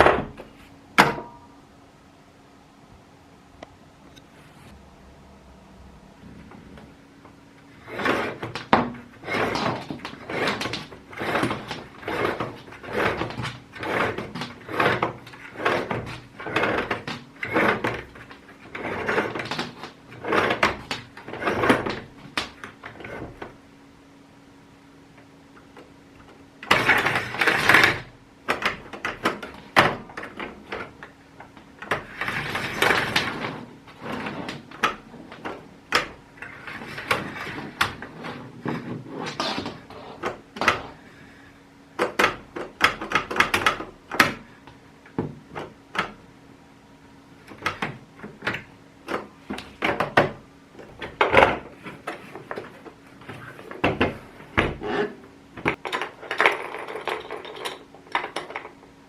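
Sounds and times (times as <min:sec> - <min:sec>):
plastic parts clicking and scraping: 0:07.7 - 0:23.6, 0:25.6 - 0:41.0, 0:47.4 - 0:58.8.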